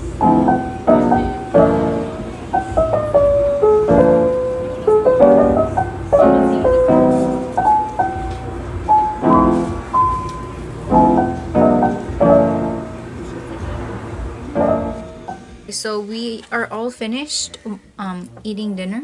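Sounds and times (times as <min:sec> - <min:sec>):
piano music: 0:00.0 - 0:15.8.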